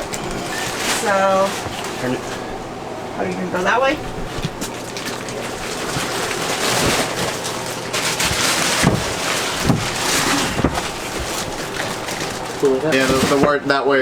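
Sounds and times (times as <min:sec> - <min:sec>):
mattress rustling and scraping: 0:00.0 - 0:02.7, 0:03.5 - 0:13.8.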